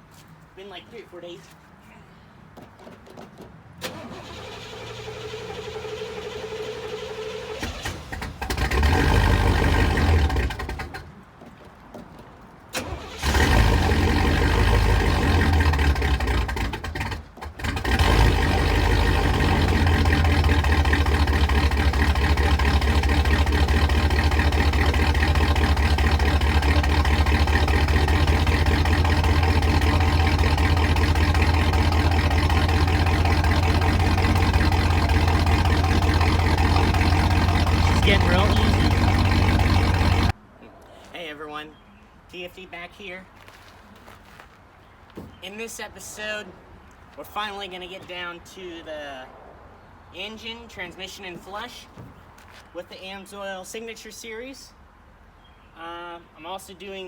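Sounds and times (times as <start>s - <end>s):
car engine starting and idling: 3.4s - 11.2s, 12.6s - 40.4s
starter cranking: 3.8s - 11.1s, 12.8s - 40.3s.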